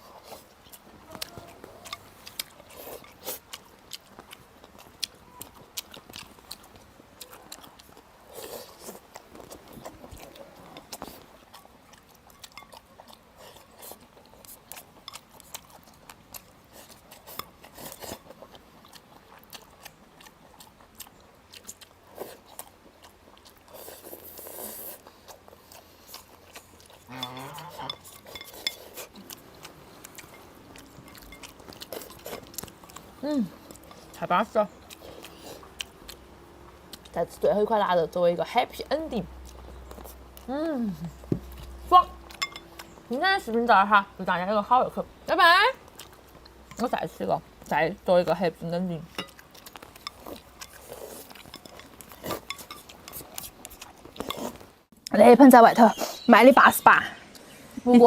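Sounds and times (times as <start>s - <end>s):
chewing and biting: 0.0s - 37.7s, 39.2s - 43.5s, 45.8s - 47.8s, 49.0s - 55.1s.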